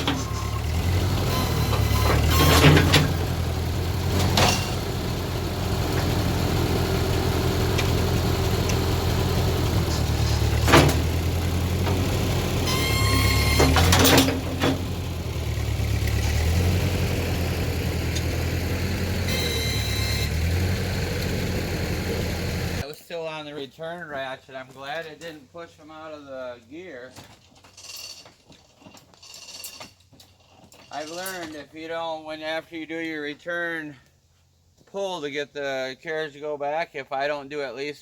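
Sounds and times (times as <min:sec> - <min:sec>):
sawmill engine idling: 0:00.0 - 0:22.8
sharp metal clanks: 0:04.2 - 0:04.8, 0:12.6 - 0:14.8.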